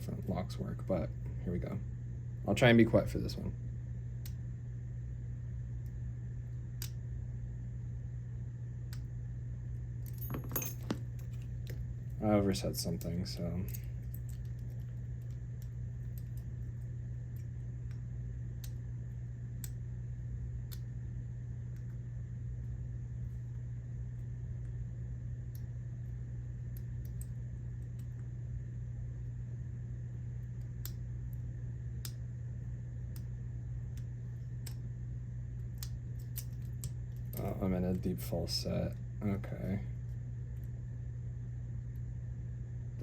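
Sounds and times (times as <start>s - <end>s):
steady low hum: 0.0s - 43.0s
lock pick clicking on pins: 35.8s - 37.4s.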